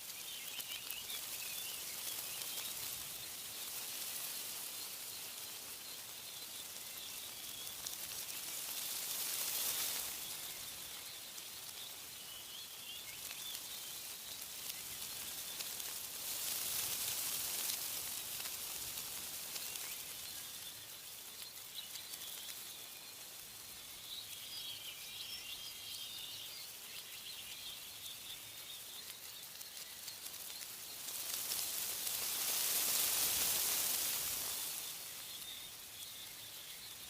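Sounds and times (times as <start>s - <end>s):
faint bird chirps: 0.0s - 37.0s
wind rustling tree leaves: 0.0s - 37.0s.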